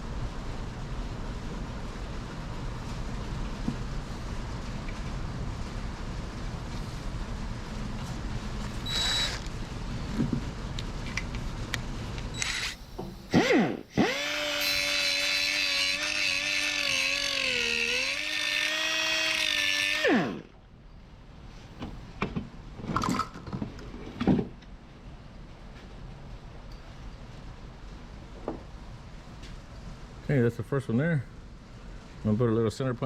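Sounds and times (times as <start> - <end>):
electric drill running: 8.6 - 9.6, 12.3 - 20.6.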